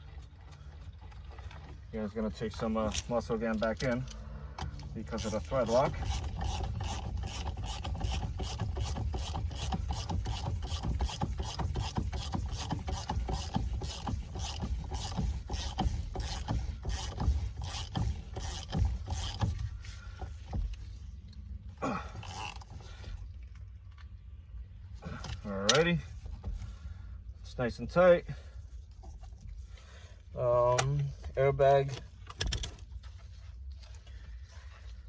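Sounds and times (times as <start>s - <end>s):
ratchet wrench clicking: 5.1s - 19.6s, 22.2s - 22.7s.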